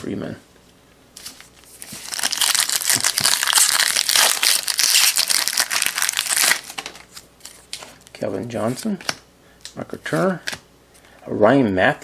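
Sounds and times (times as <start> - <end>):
foil wrapper crinkling: 1.3 - 8.0.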